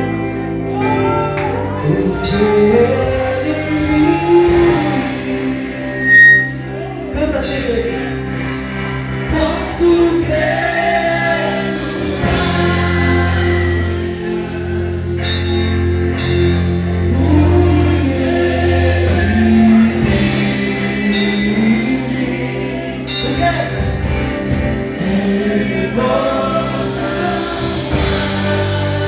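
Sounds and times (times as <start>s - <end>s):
held bass notes: 0.0s - 29.0s
worship band playing gospel: 0.0s - 29.0s
voices singing: 9.2s - 15.7s, 16.4s - 23.8s, 24.8s - 29.0s.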